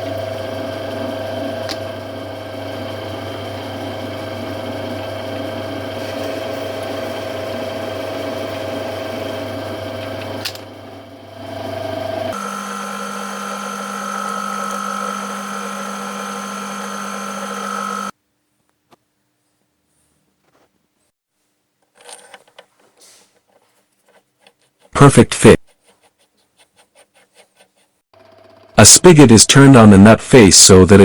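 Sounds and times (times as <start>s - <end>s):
high steady machine whine: 0.0s - 18.1s
metal lathe humming: 0.0s - 18.1s.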